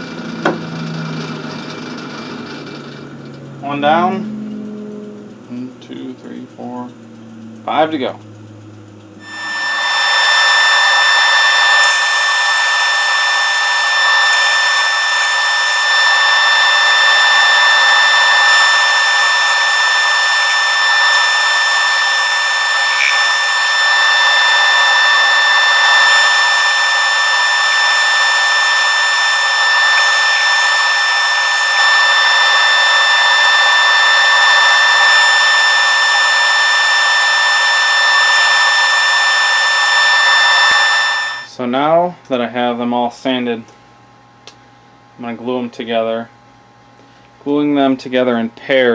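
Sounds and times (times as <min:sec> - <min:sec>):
wood block sanding hiss: 0:09.2 - 0:32.2
lathe whining: 0:09.2 - 0:41.5.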